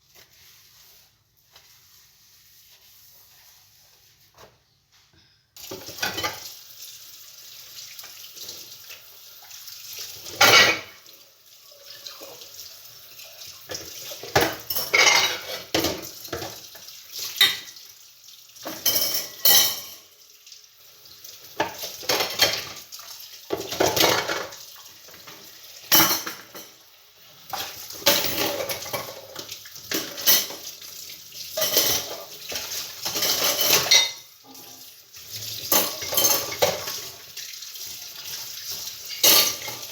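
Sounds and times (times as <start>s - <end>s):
dishes clattering and clinking: 5.6s - 6.5s, 10.2s - 11.0s, 13.6s - 17.8s, 18.6s - 20.1s, 21.6s - 22.9s, 23.5s - 26.8s, 27.5s - 30.8s, 31.5s - 37.2s, 38.2s - 39.9s
running and splashing water: 5.6s - 39.9s.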